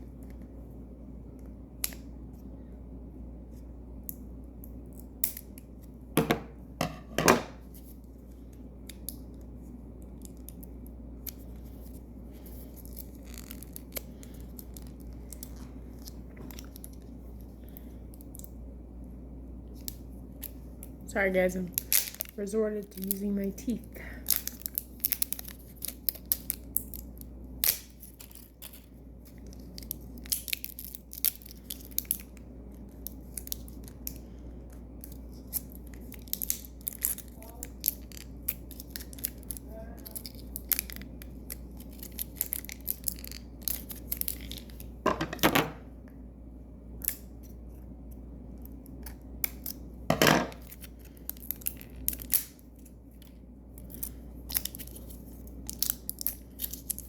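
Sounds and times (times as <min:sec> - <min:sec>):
packaging wrappers crinkling: 0:07.6 - 0:18.5, 0:19.7 - 0:45.0, 0:48.6 - 0:57.0
wrapper ripping: 0:35.0 - 0:44.9, 0:50.5 - 0:52.9, 0:53.8 - 0:57.0.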